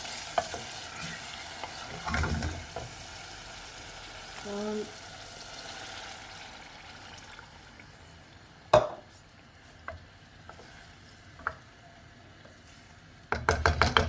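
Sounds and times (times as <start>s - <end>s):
faint sizzle: 0.0s - 13.4s
spoon knocking against pot: 13.3s - 14.0s.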